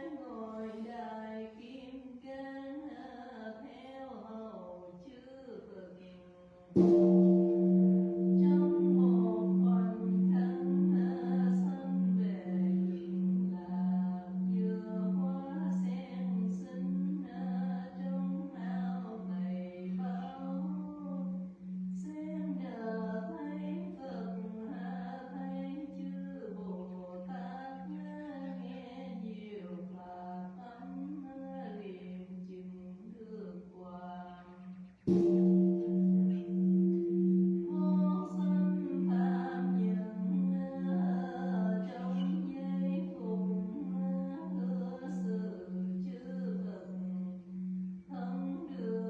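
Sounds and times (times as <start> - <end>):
large temple bell ringing: 6.8 - 28.7, 35.1 - 49.0
person chanting: 6.8 - 49.0.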